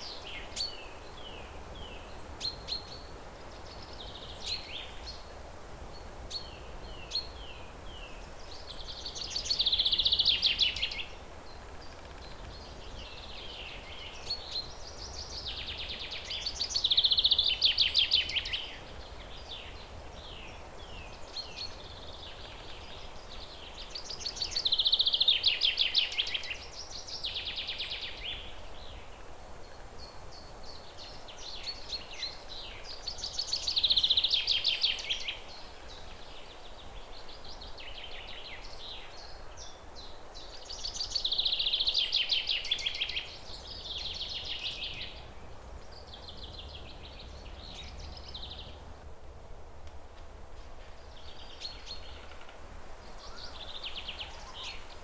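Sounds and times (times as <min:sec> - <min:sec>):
songbird singing: 0:00.0 - 0:55.0
steady background hiss: 0:00.0 - 0:55.0.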